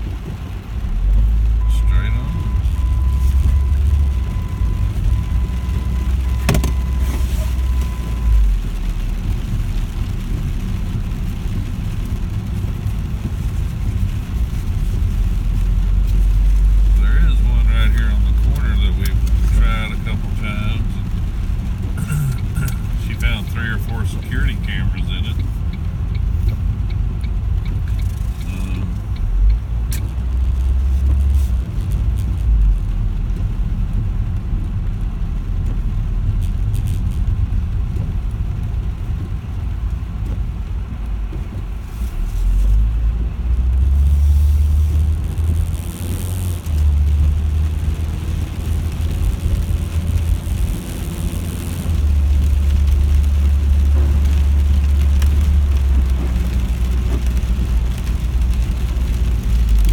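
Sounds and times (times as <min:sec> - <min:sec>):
car engine and road rumble: 0:00.0 - 0:59.9.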